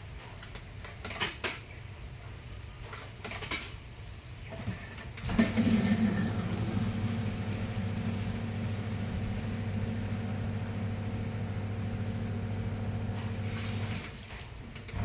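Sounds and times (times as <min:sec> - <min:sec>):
motor humming: 0:05.3 - 0:14.2.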